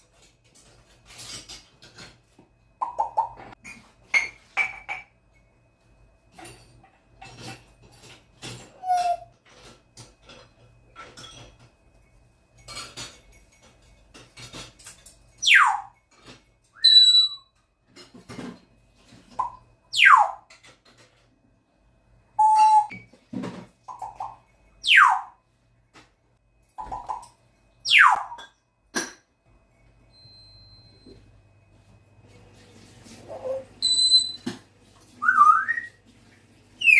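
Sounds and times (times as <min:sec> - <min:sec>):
parrot clicks and squeaks: 0:15.4 - 0:15.9, 0:27.9 - 0:28.4
parrot swooping whistles: 0:16.8 - 0:17.5, 0:35.2 - 0:36.0.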